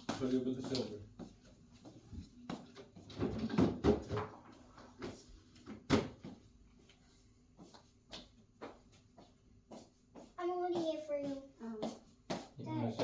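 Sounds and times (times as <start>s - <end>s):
chair parts knocking and clattering: 2.8s - 4.4s.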